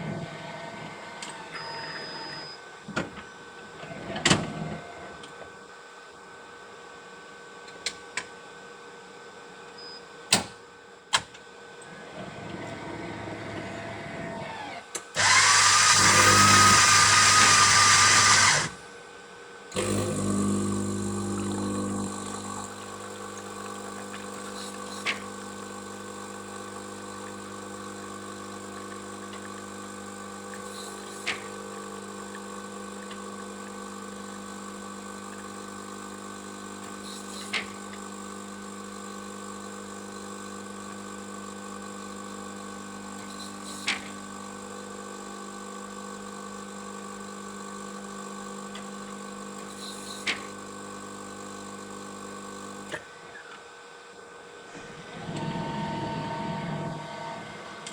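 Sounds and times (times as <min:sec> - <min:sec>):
coffee machine humming: 0:12.0 - 0:18.8, 0:19.7 - 0:53.4, 0:54.2 - 0:57.9.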